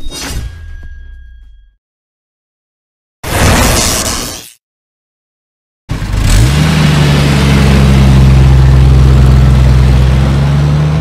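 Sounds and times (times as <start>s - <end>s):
car engine running: 5.9s - 11.0s.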